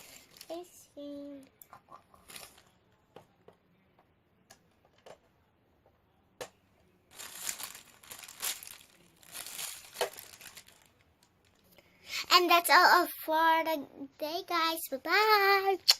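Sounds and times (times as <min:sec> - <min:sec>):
crinkling rustle: 0:00.0 - 0:00.8, 0:07.1 - 0:11.7.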